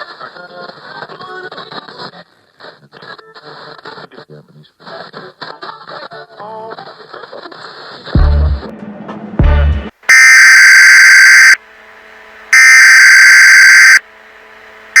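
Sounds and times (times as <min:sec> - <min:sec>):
screeching data bursts: 0:10.1 - 0:11.6, 0:12.6 - 0:14.0.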